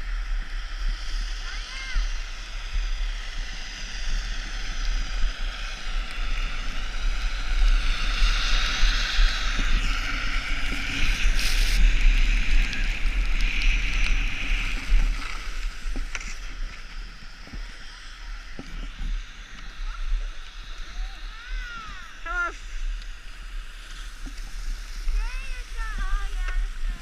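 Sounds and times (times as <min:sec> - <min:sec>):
skis scraping over snow: 0:00.0 - 0:27.0
wind on microphone: 0:00.0 - 0:27.0.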